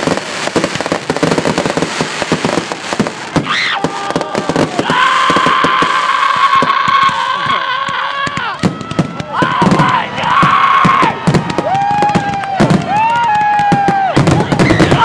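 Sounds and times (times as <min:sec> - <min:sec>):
fireworks crackling: 0:00.0 - 0:15.0
firework whistle: 0:10.8 - 0:15.0.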